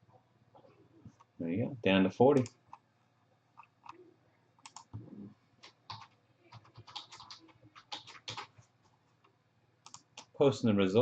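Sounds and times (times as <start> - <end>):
keyboard typing: 4.6 - 8.7, 9.8 - 10.4.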